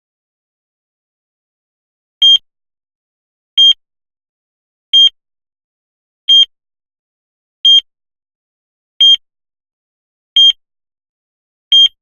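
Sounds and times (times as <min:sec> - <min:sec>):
heart monitor beeps: 0:02.2 - 0:02.4, 0:03.6 - 0:03.8, 0:05.0 - 0:05.2, 0:06.3 - 0:06.5, 0:07.6 - 0:07.9, 0:09.0 - 0:09.2, 0:10.4 - 0:10.6, 0:11.7 - 0:12.0.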